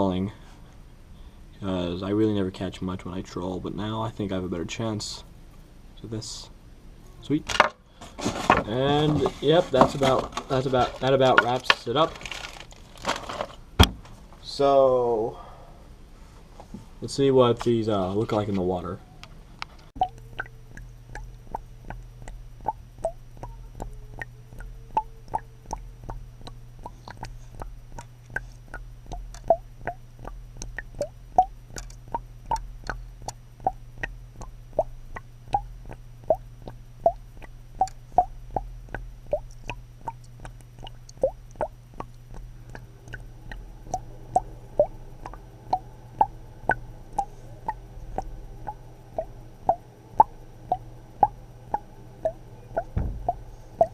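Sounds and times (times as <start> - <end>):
steady low hum: 0.0 - 53.9
water plopping: 20.0 - 53.9.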